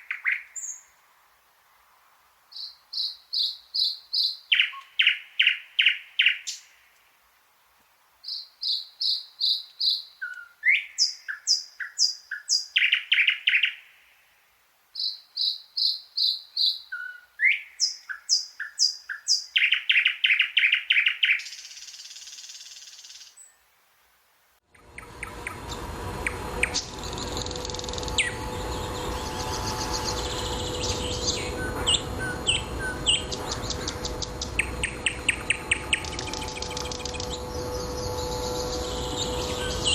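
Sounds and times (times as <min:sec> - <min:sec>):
nightingale singing: 0:00.0 - 0:01.0, 0:02.5 - 0:07.1, 0:08.2 - 0:14.1, 0:14.9 - 0:23.7, 0:24.8 - 0:39.9
noisy background hum: 0:24.7 - 0:39.9.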